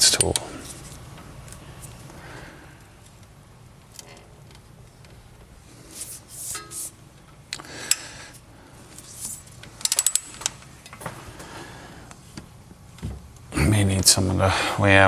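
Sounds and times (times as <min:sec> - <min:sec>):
hand tools knocking and scraping: 0:05.9 - 0:08.1.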